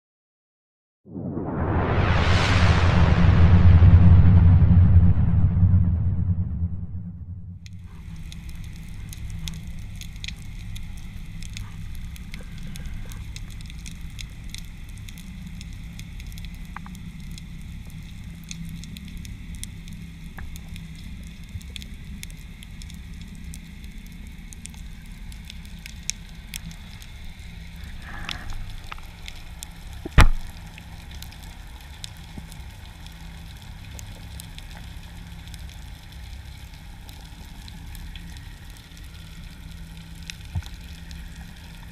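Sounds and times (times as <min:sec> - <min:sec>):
low rumble of moving water: 0:01.1 - 0:41.9
snapping shrimp crackling: 0:07.7 - 0:15.1.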